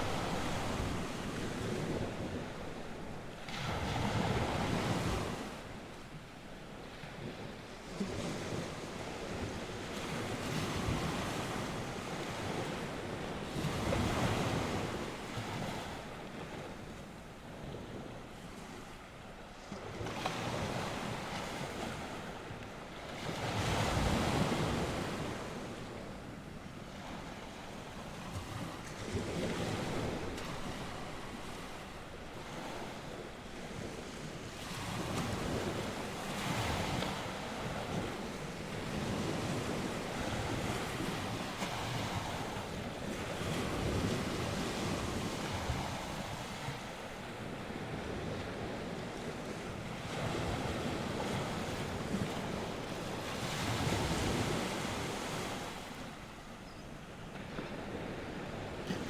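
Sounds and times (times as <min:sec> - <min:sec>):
wind on microphone: 0:00.0 - 0:06.0, 0:19.6 - 0:59.0
waves breaking on shore: 0:00.0 - 0:59.0.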